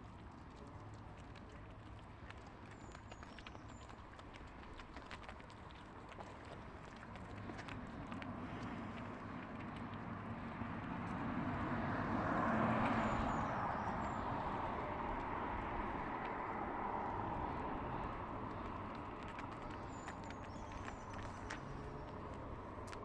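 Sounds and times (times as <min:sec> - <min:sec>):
vehicle passing by: 0:07.4 - 0:23.0.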